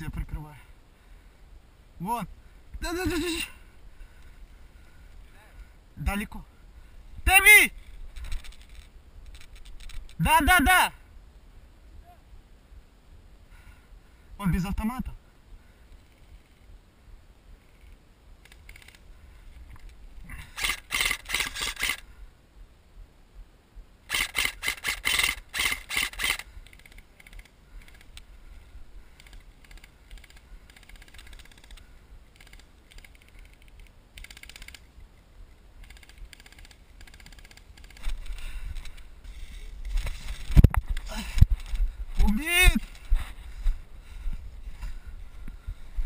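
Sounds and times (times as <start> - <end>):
airsoft rifle bursts: 20.3 - 22.1, 24.1 - 28.1.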